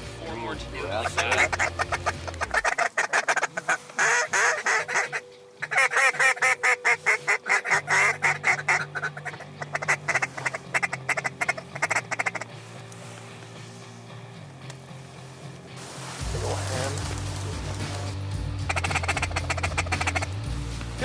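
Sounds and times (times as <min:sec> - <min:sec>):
duck quacking: 0:00.9 - 0:12.5, 0:18.5 - 0:20.5.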